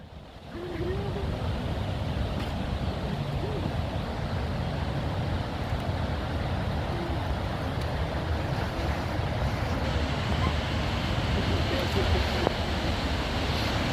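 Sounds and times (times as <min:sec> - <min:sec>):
waterfall rushing: 0:00.4 - 0:13.9.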